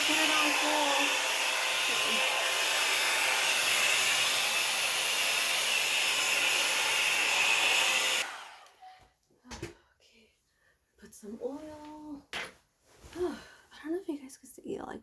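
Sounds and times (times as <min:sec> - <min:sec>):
blow dryer running: 0:00.0 - 0:08.8.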